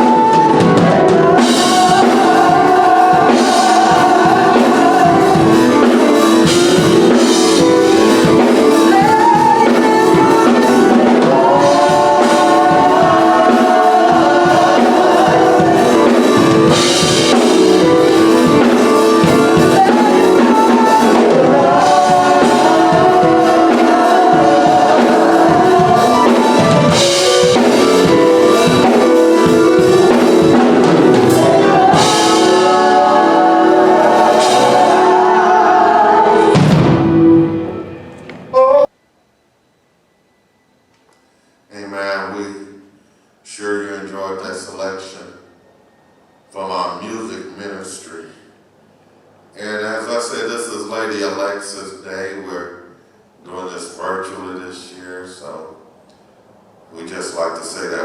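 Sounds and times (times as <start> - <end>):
drum kit: 0.0 - 38.8
gospel singing: 0.0 - 38.9, 49.6 - 58.0.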